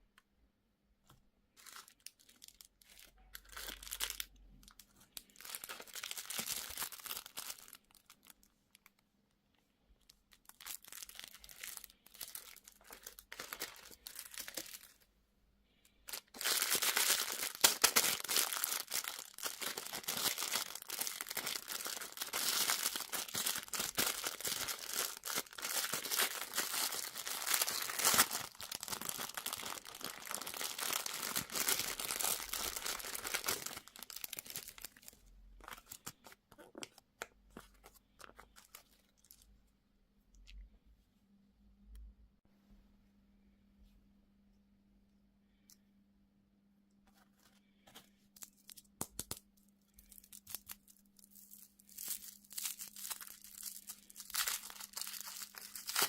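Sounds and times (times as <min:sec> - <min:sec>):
candy wrapper crinkling and tearing: 0:01.5 - 0:09.0, 0:10.0 - 0:15.0, 0:15.9 - 0:39.5, 0:48.4 - 0:56.0.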